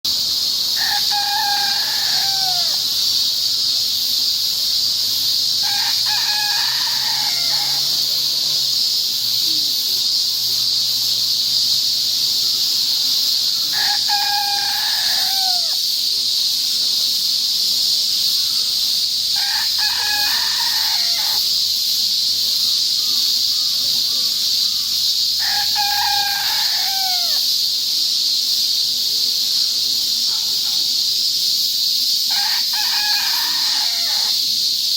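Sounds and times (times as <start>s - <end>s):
cicadas chorus: 0.0s - 34.9s
rooster crowing: 0.7s - 2.9s, 5.6s - 8.4s, 13.7s - 15.8s, 19.3s - 21.5s, 25.4s - 27.5s, 32.3s - 34.5s.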